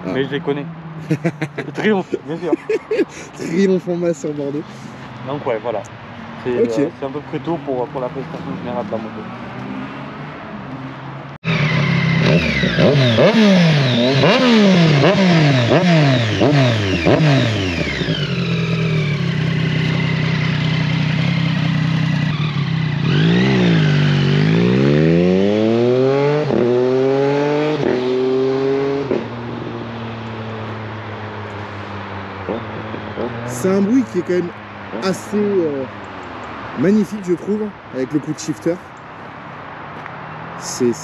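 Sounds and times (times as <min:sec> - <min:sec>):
motorcycle engine revving: 0:06.4 - 0:36.2.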